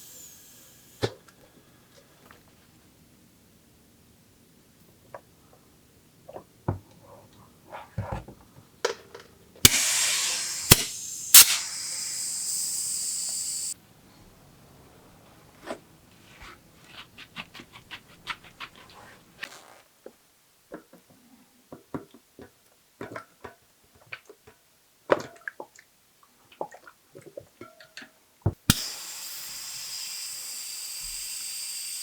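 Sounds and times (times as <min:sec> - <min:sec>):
high hiss: 0:00.0 - 0:01.1, 0:09.6 - 0:13.8, 0:28.7 - 0:32.0.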